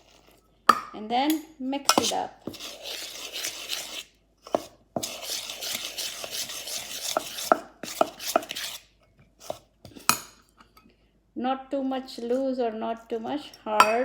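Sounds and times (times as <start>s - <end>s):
batter stirred in bowl: 0.0s - 0.8s, 1.8s - 10.4s, 12.2s - 14.0s.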